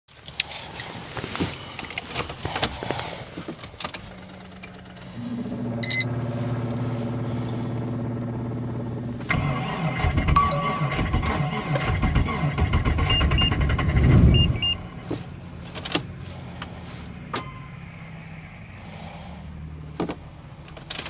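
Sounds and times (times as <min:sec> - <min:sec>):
engine running rough: 0:00.5 - 0:21.0
starter cranking slowly: 0:04.0 - 0:15.1
short high beep: 0:05.8 - 0:06.1, 0:10.3 - 0:11.1, 0:14.3 - 0:15.0.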